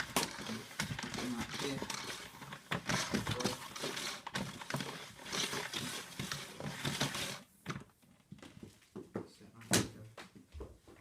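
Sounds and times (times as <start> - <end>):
power cable being pulled out: 0.0 - 7.5.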